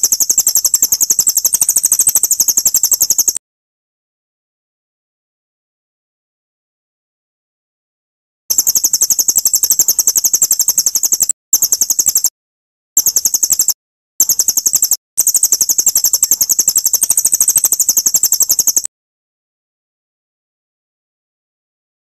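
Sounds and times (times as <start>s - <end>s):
songbird high fast trill: 0.0s - 3.4s, 8.5s - 12.3s, 13.0s - 18.9s.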